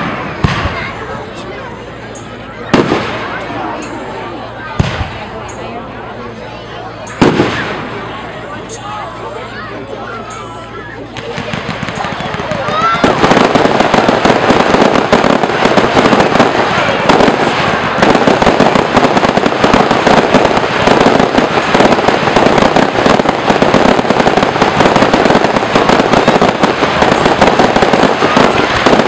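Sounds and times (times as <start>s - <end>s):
firework bursts: 2.2s - 4.2s, 7.0s - 8.5s, 11.0s - 29.0s.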